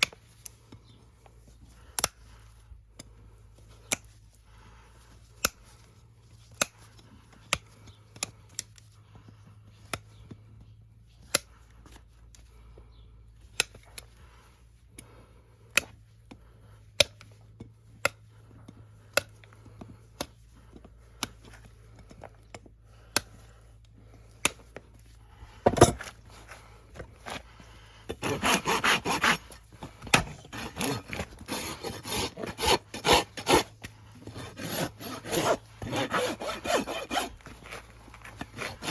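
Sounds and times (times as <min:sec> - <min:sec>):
hoof trimming snips: 0:05.2 - 0:12.4, 0:26.0 - 0:38.9
hoof rasp filing: 0:28.1 - 0:38.9.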